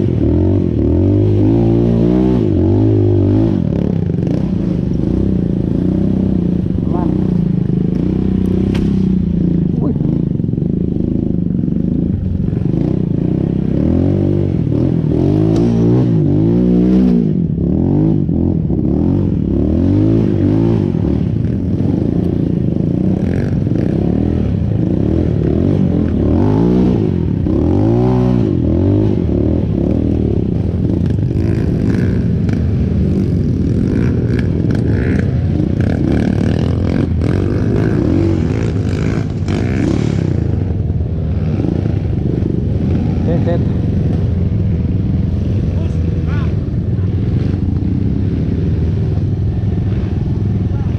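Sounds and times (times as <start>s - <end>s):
motorcycle engine revving: 0.0s - 50.9s.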